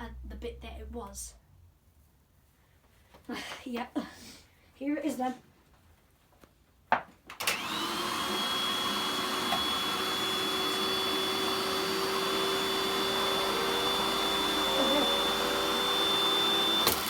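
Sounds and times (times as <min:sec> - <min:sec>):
vacuum cleaner motor whine: 0:07.4 - 0:17.0.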